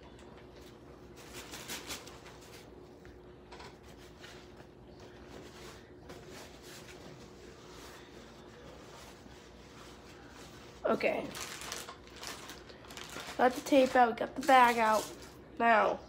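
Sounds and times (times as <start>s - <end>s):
plastic rustling and crinkling: 3.8s - 15.5s.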